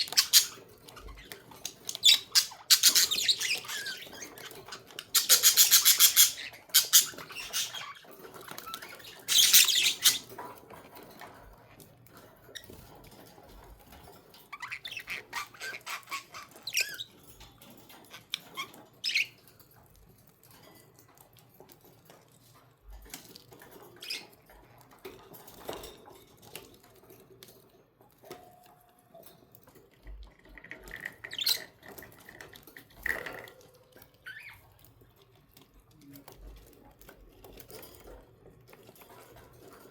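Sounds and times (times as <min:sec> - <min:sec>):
budgerigars chirping and squawking: 0:00.0 - 0:10.6, 0:14.5 - 0:17.2, 0:17.9 - 0:19.4, 0:31.2 - 0:32.2.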